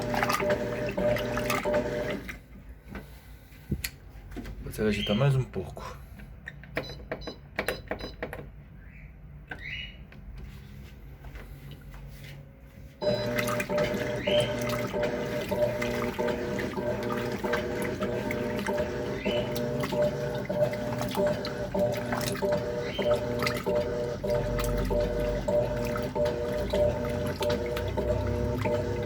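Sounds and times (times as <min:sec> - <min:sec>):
washing machine water churning: 0:00.0 - 0:03.2, 0:12.9 - 0:29.0.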